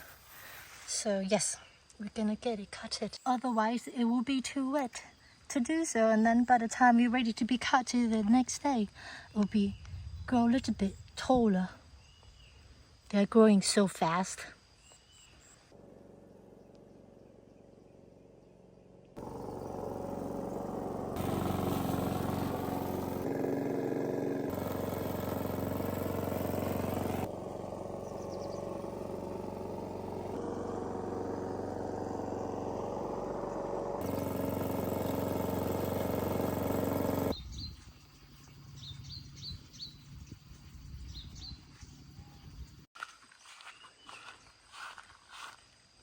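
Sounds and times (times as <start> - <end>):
lawn mower engine running: 15.8 - 37.4.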